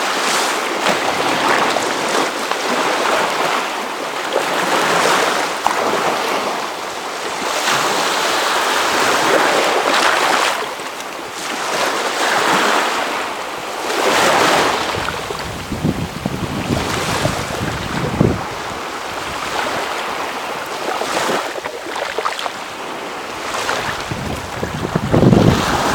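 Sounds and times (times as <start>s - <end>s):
waves washing ashore: 0.0s - 25.9s
wind buffeting microphone: 13.6s - 21.5s, 22.5s - 25.9s.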